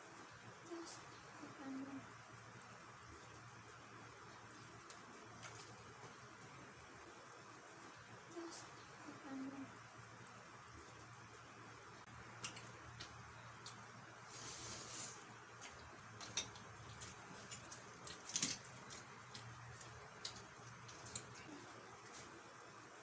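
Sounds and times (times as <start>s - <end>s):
people chewing with mouth smacks: 12.3s - 22.4s.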